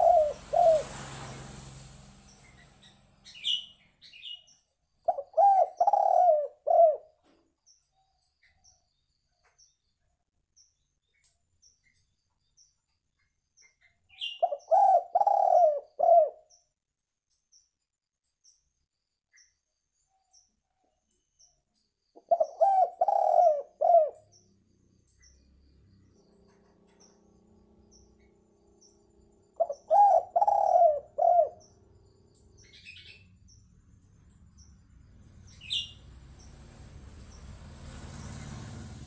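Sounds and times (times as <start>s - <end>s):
dove cooing: 0.0s - 1.0s, 5.1s - 7.2s, 14.4s - 16.4s, 22.2s - 24.4s, 29.6s - 31.7s.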